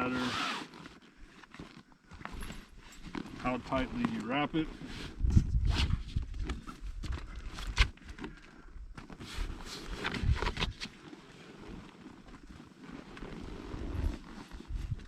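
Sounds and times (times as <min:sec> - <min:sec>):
heavy canvas rustling: 0:00.0 - 0:15.0.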